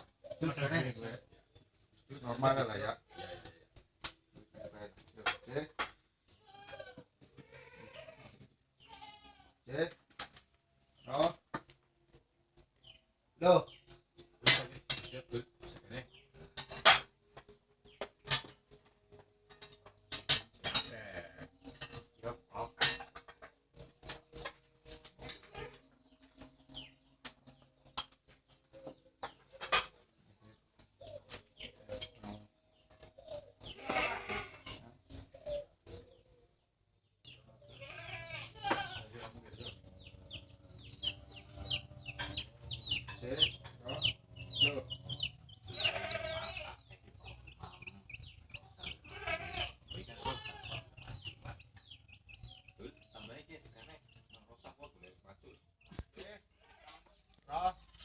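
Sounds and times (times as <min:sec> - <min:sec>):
insects chirping: 0:12.1 - 0:30.0, 0:30.8 - 0:36.2, 0:37.3 - 0:56.0.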